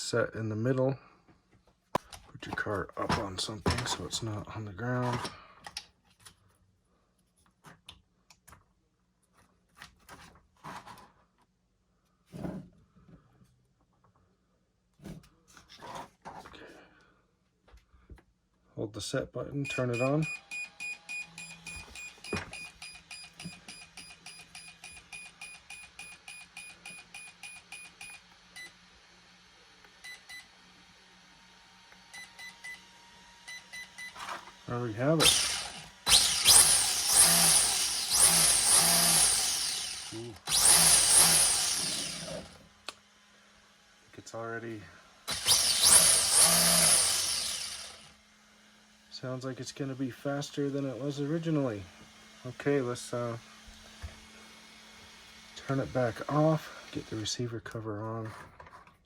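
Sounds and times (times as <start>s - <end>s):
short high beeps: 19.6s - 28.2s
slower lower beeps: 19.6s - 28.7s.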